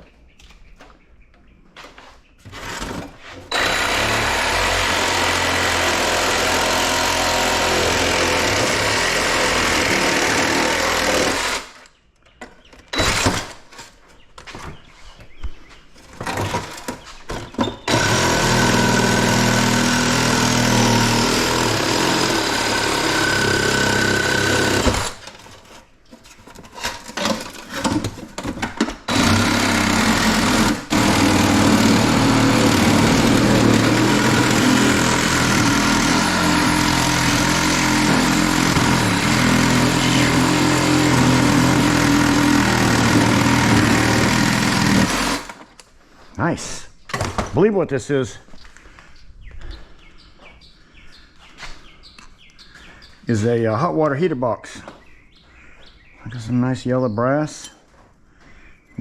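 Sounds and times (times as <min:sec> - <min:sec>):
power tool running: 0:02.5 - 0:11.9, 0:12.9 - 0:13.6, 0:17.8 - 0:25.5, 0:29.1 - 0:45.7.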